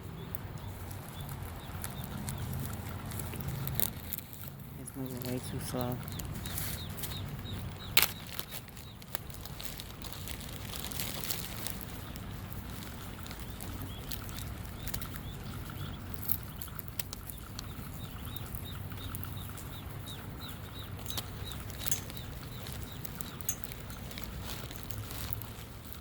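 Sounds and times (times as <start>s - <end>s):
ducklings peeping: 0.0s - 26.0s
rain pattering: 0.1s - 6.4s.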